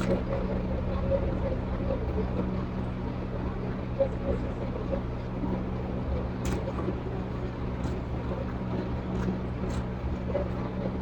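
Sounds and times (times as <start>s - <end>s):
low mechanical hum: 0.0s - 11.0s
eating and chewing: 6.4s - 11.0s.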